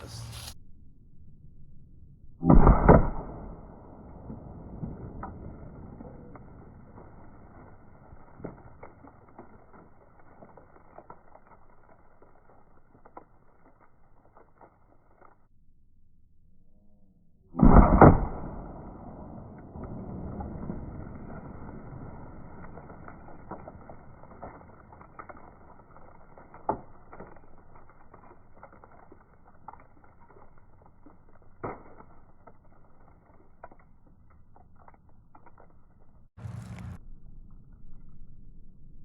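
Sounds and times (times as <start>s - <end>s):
low rumble: 0.0s - 15.2s, 15.8s - 39.0s
air rifle shot: 2.4s - 6.4s, 17.6s - 21.5s.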